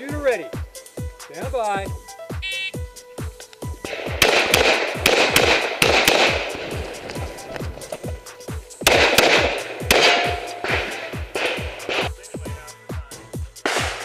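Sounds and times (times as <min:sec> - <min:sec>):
electronic dance music: 0:01.3 - 0:02.9
handgun shots: 0:03.9 - 0:08.0, 0:08.8 - 0:12.2, 0:13.7 - 0:14.0.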